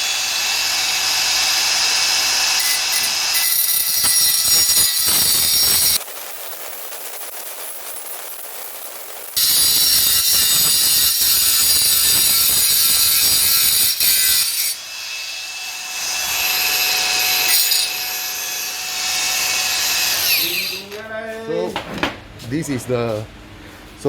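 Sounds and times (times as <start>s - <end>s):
angle grinder cutting steel: 0.0s - 6.0s, 9.3s - 21.0s.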